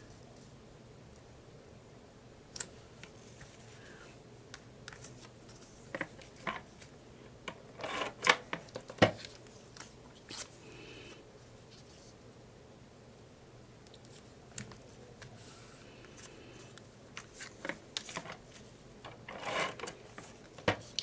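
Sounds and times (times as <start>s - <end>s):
paper rustling: 14.1s - 21.0s.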